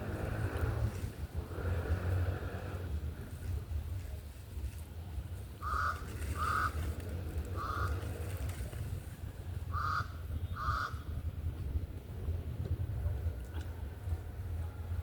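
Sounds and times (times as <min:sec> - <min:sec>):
low steady rumble: 0:00.0 - 0:15.0
bird calling: 0:05.6 - 0:06.8, 0:09.7 - 0:11.1.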